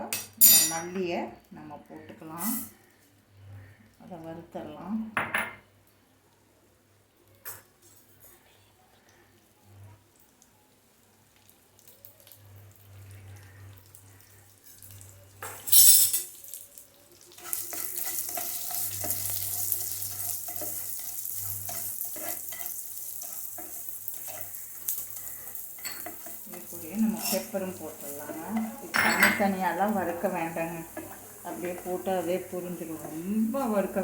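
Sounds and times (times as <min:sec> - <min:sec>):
seeds sizzling in hot oil: 0:00.4 - 0:05.0, 0:07.4 - 0:34.0
spoon scraping a pan: 0:15.4 - 0:16.4, 0:17.3 - 0:34.0.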